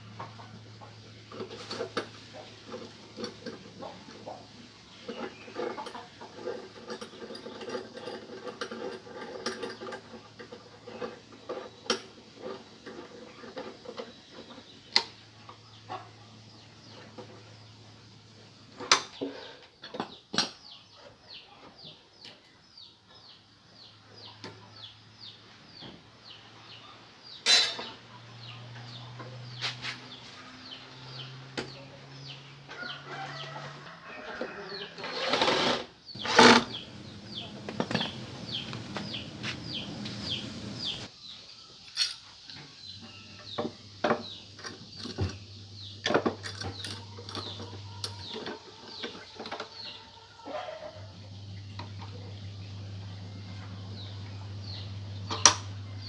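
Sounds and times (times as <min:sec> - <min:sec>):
electric motor hum: 0:35.2 - 0:41.1, 0:51.0 - 0:56.0
small bird chirping: 0:36.1 - 0:41.7.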